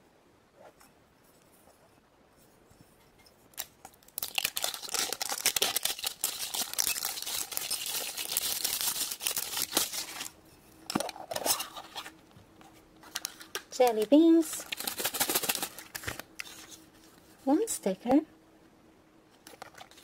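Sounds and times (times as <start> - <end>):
packaging torn and crinkled: 3.6 - 10.4, 13.0 - 16.8, 19.4 - 20.0.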